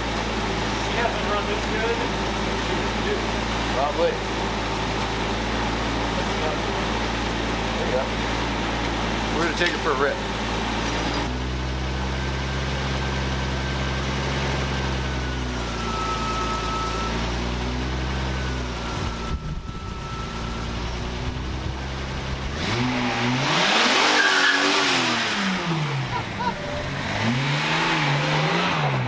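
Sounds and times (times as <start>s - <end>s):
car engine idling and revving: 0.0s - 29.0s.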